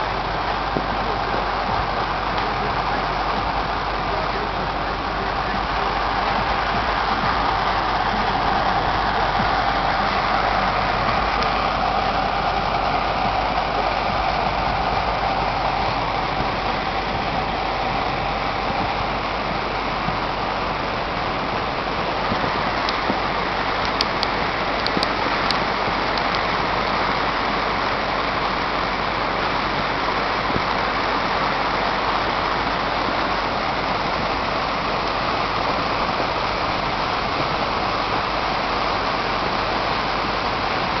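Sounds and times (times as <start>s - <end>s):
heavy rain: 0.0s - 41.0s
running flood water: 0.0s - 41.0s
sharp clicks: 23.8s - 26.6s.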